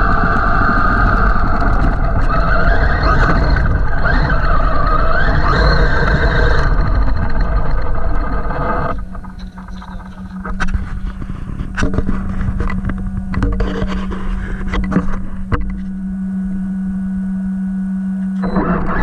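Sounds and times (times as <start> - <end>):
tyre and ground noise: 0.0 - 16.5
electric motor whining: 0.0 - 19.0
low hum: 0.0 - 19.0
sharp clicks and knocks: 1.4 - 16.0.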